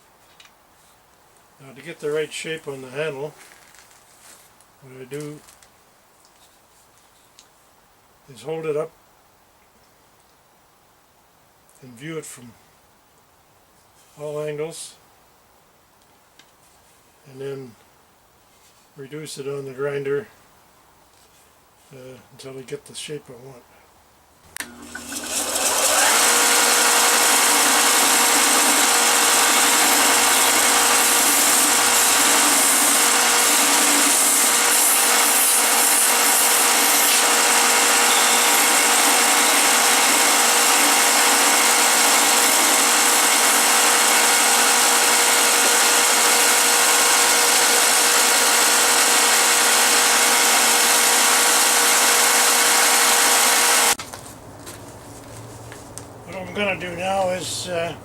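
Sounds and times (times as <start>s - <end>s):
belt sander grinding wood: 24.6s - 54.0s.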